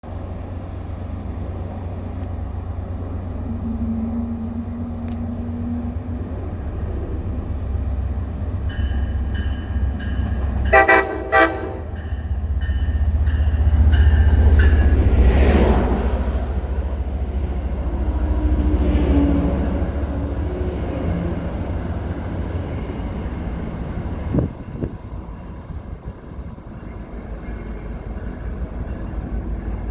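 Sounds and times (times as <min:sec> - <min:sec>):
diesel locomotive rumble: 0:00.0 - 0:29.9
train horn blasts: 0:10.6 - 0:12.4.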